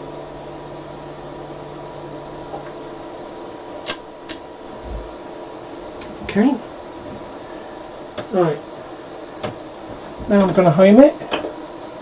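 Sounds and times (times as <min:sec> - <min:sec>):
low hum: 0:00.0 - 0:12.0
whirring fan hum: 0:00.0 - 0:12.0
sharp clicks: 0:03.8 - 0:04.4.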